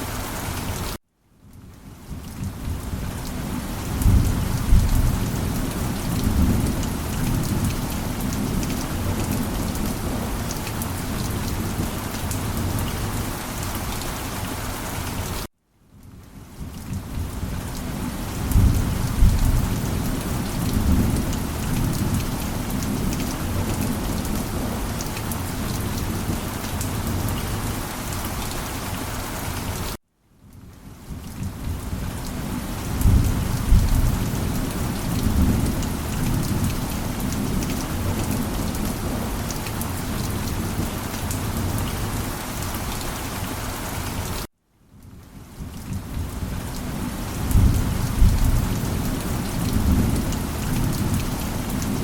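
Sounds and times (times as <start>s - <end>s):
heavy rain: 0.0s - 52.0s
thunder rumble: 3.9s - 10.2s, 47.4s - 51.3s.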